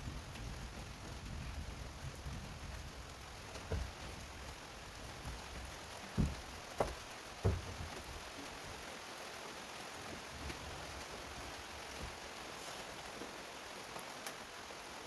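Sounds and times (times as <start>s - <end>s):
rain hissing: 0.0s - 15.0s
dull thumps: 3.4s - 8.4s.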